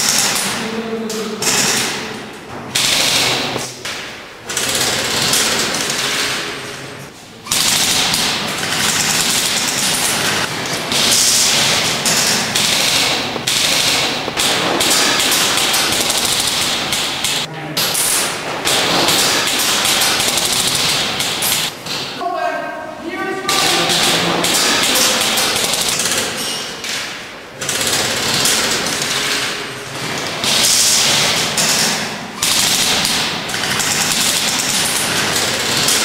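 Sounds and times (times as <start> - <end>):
airsoft guns firing bursts: 2.7 - 3.7, 7.5 - 17.5, 18.6 - 21.8, 23.5 - 26.3, 30.4 - 36.0.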